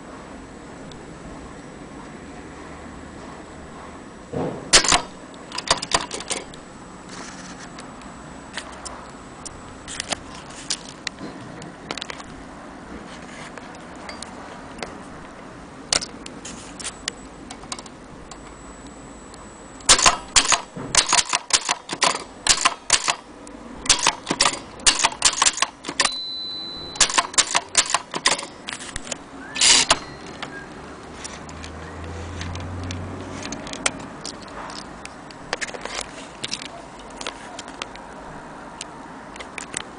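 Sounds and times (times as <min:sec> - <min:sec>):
typewriter key strikes: 0:04.7 - 0:06.5, 0:19.9 - 0:23.2, 0:23.9 - 0:26.3, 0:26.9 - 0:28.5
typewriter bell ring: 0:23.9 - 0:28.7, 0:29.6 - 0:30.4.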